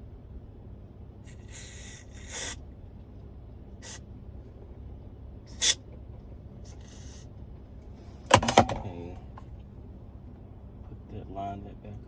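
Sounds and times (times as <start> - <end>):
aerosol can spraying hiss: 1.3 - 2.6, 5.5 - 5.8, 6.7 - 7.2.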